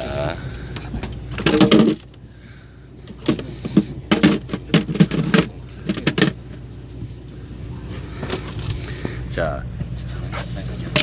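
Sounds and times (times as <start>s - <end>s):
indistinct voices: 0.0s - 2.0s
boat engine hum: 0.0s - 11.0s
clatter on deck: 0.9s - 2.1s, 3.1s - 6.6s.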